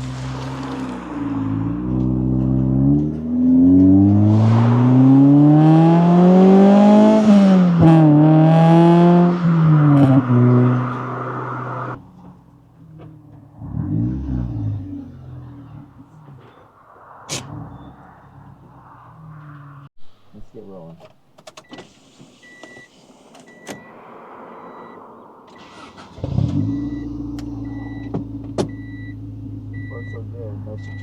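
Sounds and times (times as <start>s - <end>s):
car engine revving: 0.0s - 19.9s, 22.9s - 31.0s.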